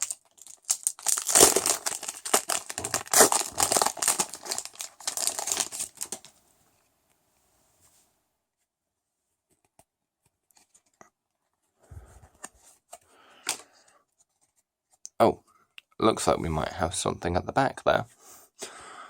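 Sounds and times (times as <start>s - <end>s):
wrapper rustling and crackling: 0.0s - 6.4s.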